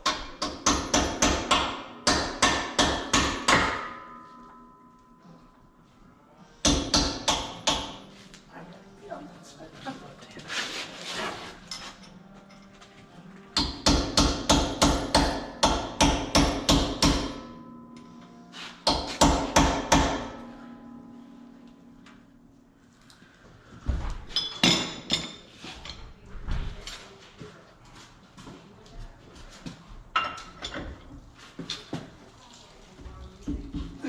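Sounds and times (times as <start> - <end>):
hammer ringing on steel: 0.4 - 5.3, 13.6 - 18.2, 19.2 - 21.7.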